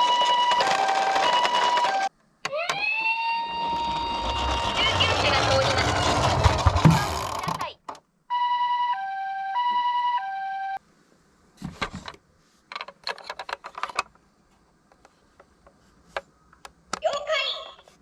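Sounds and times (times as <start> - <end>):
toy two-tone siren: 0.0 - 4.8, 8.3 - 10.8.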